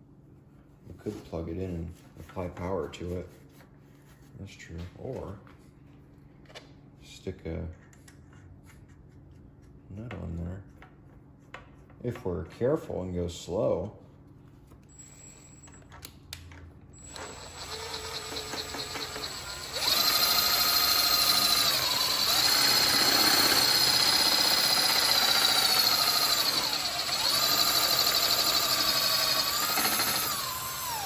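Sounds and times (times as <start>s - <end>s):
electric power drill spinning: 17.0s - 31.0s.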